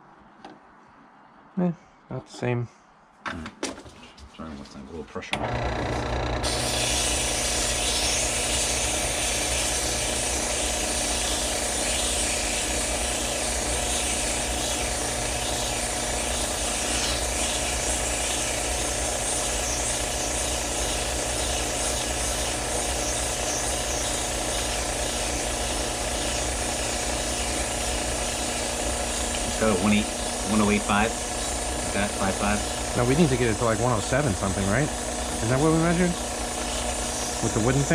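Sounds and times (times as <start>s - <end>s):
power tool motor humming: 5.4s - 37.9s.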